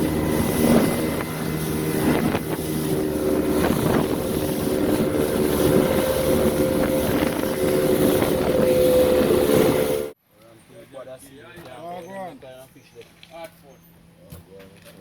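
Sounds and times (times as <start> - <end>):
boat motor humming: 0.0 - 10.2
wind buffeting microphone: 0.0 - 10.2.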